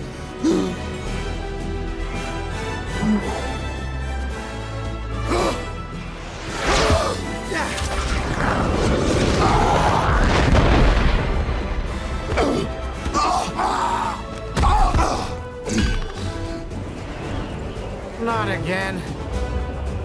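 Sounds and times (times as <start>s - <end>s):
dramatic film score: 0.0s - 20.0s
battle booms and crashes: 7.8s - 13.0s.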